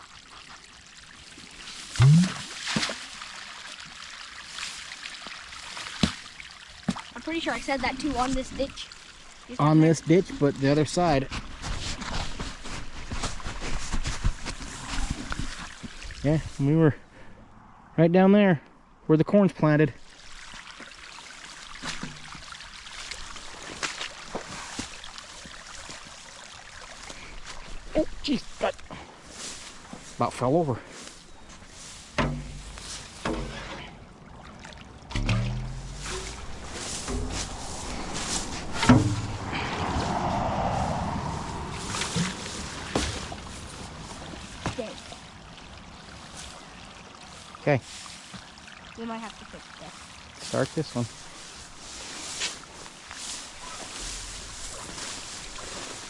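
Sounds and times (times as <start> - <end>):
water running and trickling: 0.0 - 11.6, 19.9 - 56.0
water splash: 1.4 - 12.4, 20.0 - 27.8, 32.2 - 51.5
low rising grunt: 37.2 - 42.4.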